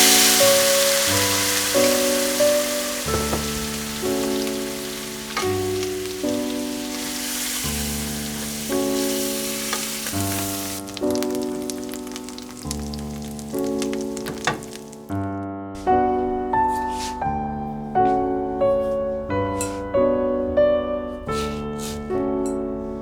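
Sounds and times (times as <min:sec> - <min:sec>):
food sizzling in hot oil: 0:00.0 - 0:15.1.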